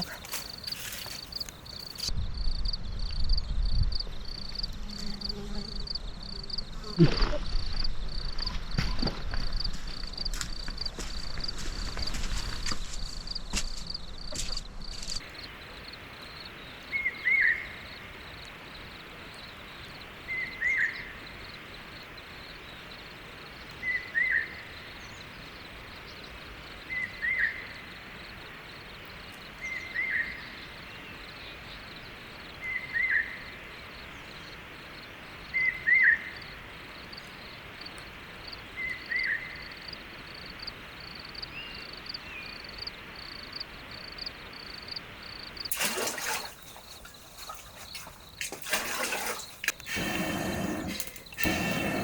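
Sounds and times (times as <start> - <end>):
insect trilling: 49.6 - 52.0.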